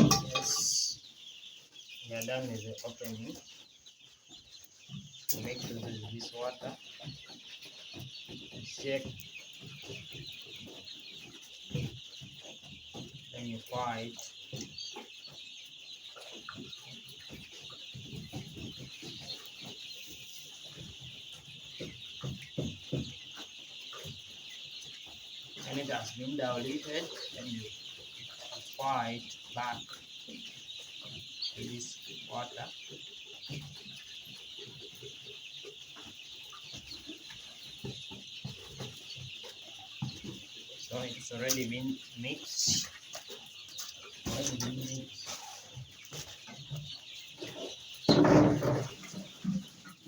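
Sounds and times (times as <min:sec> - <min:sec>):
handling knocks and rustles: 0:00.0 - 0:00.9
chicks peeping: 0:00.0 - 0:50.0.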